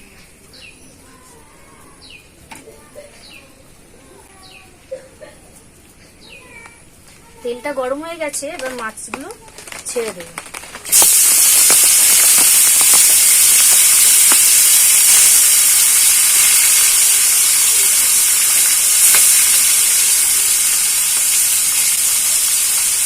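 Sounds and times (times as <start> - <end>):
oil crackling: 7.4 - 23.0
fish sizzling in hot oil: 9.9 - 23.0.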